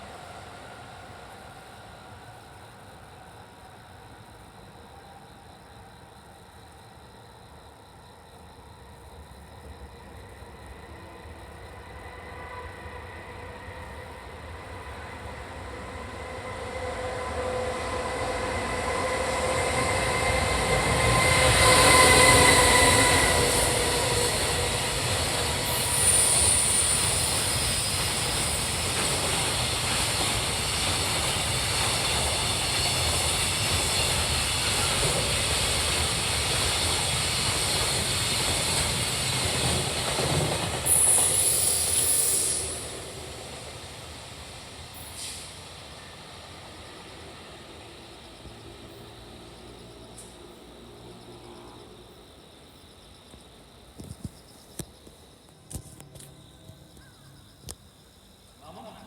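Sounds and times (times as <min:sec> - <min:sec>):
locomotive whine: 0:09.6 - 0:52.8
high squeal: 0:16.4 - 0:29.1, 0:40.9 - 0:43.2.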